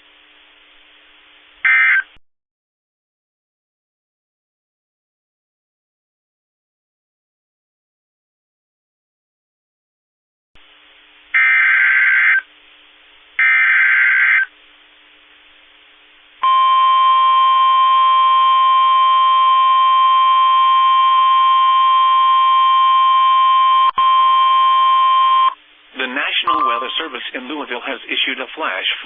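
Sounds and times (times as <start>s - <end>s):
screechy data tones: 1.7s - 2.1s, 11.4s - 12.5s, 13.4s - 14.5s, 25.4s - 27.4s
faint radio hiss: 10.6s - 11.4s, 25.6s - 29.0s
steady single-pitch alert tone: 16.4s - 27.5s.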